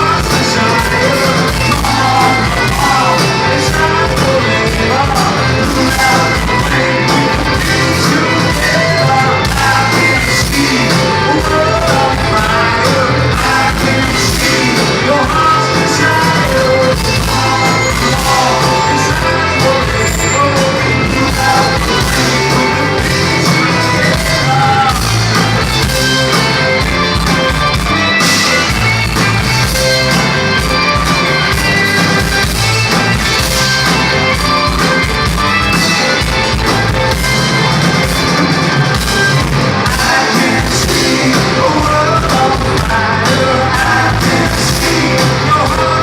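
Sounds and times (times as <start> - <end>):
person singing: 0.0 - 27.5, 39.3 - 46.0
bass guitar: 0.0 - 46.0
drums: 0.0 - 46.0
electric guitars: 0.0 - 46.0.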